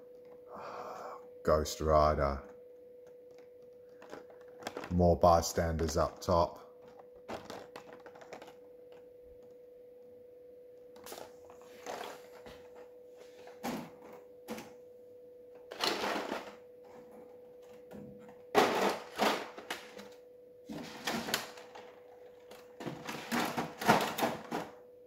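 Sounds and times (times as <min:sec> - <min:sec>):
faint steady hum: 0:00.0 - 0:25.0
crackling plastic trays: 0:03.0 - 0:09.6, 0:10.9 - 0:14.7, 0:15.7 - 0:24.8.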